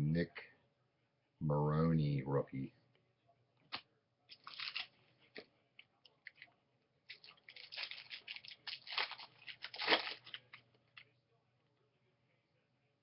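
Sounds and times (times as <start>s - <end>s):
cards and packaging crinkling: 4.3s - 5.5s, 7.1s - 11.1s.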